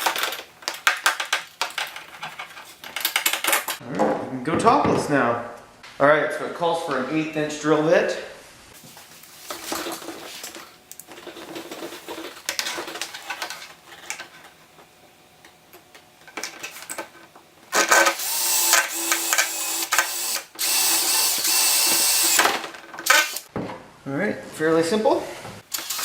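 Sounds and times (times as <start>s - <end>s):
drill handling clicks and rattles: 17.7s - 23.5s, 25.7s - 26.0s
power drill drilling: 18.1s - 23.5s.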